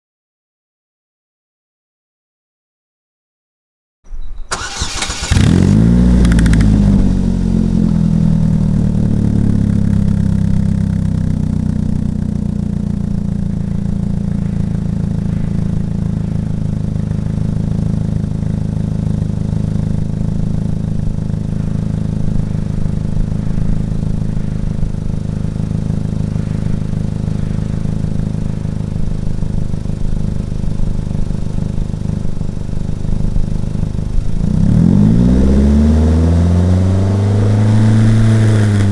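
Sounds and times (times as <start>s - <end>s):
engine starting and idling: 4.2s - 7.3s.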